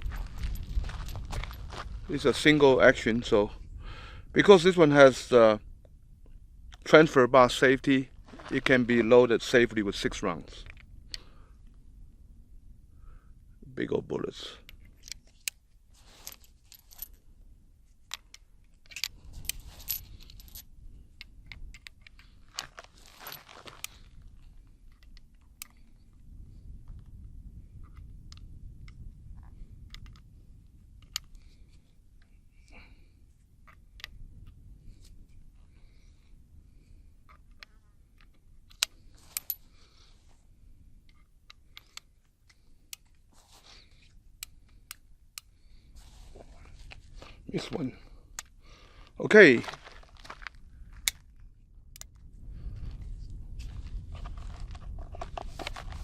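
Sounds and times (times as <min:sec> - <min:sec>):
metallic clicks of cartridges loading: 0:14.6 - 0:17.3, 0:18.0 - 0:22.9, 0:24.8 - 0:26.2, 0:29.8 - 0:30.3, 0:31.0 - 0:32.3, 0:36.8 - 0:40.1, 0:41.0 - 0:45.9, 0:48.0 - 0:48.6, 0:51.9 - 0:52.3
soft rustling: 0:15.3 - 0:17.2, 0:19.2 - 0:20.6, 0:22.2 - 0:24.7, 0:42.5 - 0:44.7, 0:45.9 - 0:47.6.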